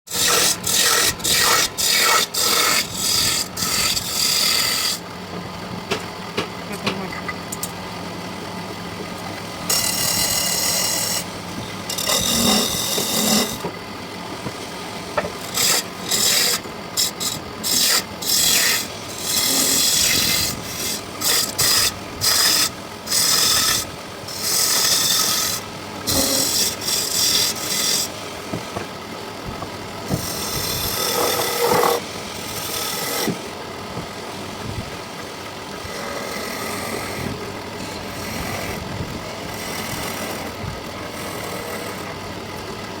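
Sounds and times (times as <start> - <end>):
sanding scratch on wood: 0.1 - 5.0, 11.9 - 13.6, 15.5 - 28.2, 30.1 - 33.4.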